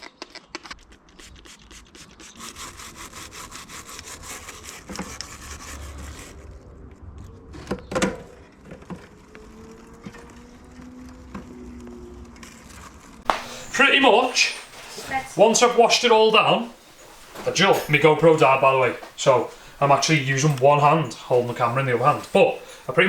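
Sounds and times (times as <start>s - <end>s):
brush scrubbing bike chain: 0.7s - 6.5s, 10.6s - 23.0s
sharp knocks: 13.3s - 13.7s.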